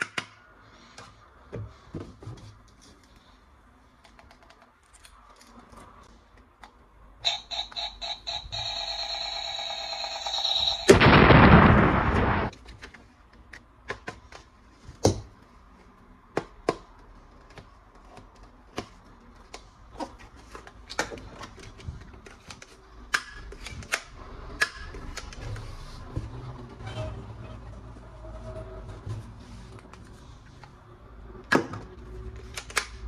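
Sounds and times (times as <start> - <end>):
loud noisy burst: 10.4 - 12.5
plastic parts clicking and snapping: 31.5 - 33.0.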